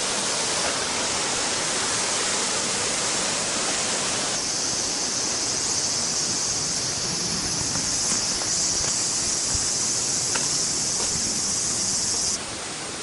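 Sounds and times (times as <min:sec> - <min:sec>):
flowing water rushing: 0:00.0 - 0:13.0
high insect buzz: 0:04.3 - 0:12.4.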